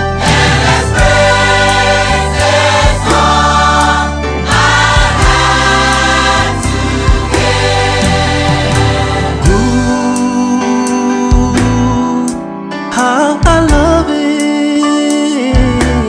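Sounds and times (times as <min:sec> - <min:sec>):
choir singing gospel: 0:00.0 - 0:10.4
bass: 0:00.0 - 0:12.6, 0:13.4 - 0:14.2, 0:15.4 - 0:16.0
drums keeping a steady beat: 0:04.5 - 0:10.0.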